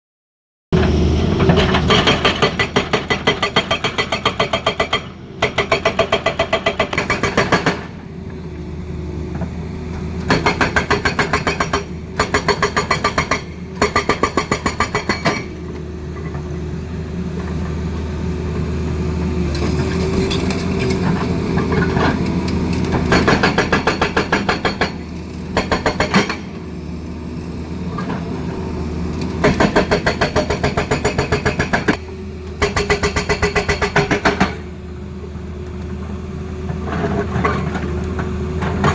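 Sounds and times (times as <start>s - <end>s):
hydraulic breaker hammering: 23.0s - 26.6s.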